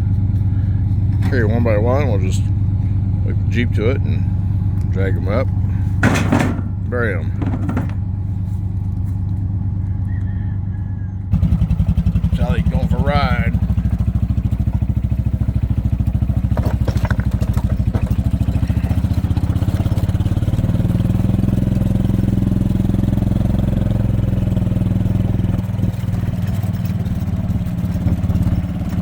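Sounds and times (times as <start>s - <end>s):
vehicle engine running: 0.0s - 29.0s
knocks or rattles: 6.0s - 8.0s, 16.4s - 19.2s.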